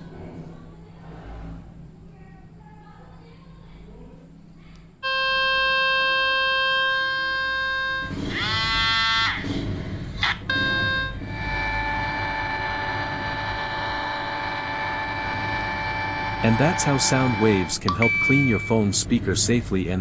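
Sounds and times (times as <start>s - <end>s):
harsh electronic buzz: 5.0s - 20.0s.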